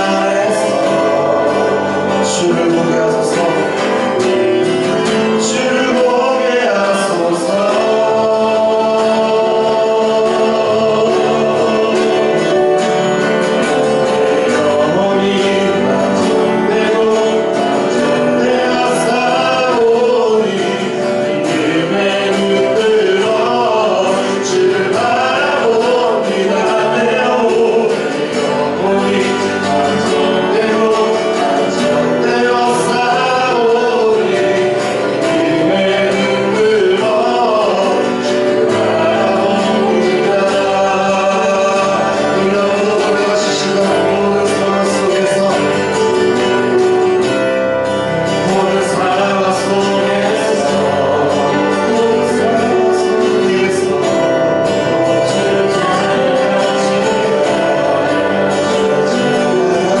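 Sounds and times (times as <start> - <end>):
group singing worship song: 0.0 - 60.0
instrumental accompaniment: 0.0 - 60.0.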